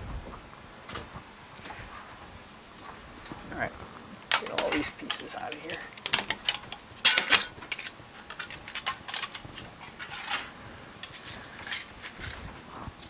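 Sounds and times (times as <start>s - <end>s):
sheet metal clinking and clattering: 4.3s - 12.6s.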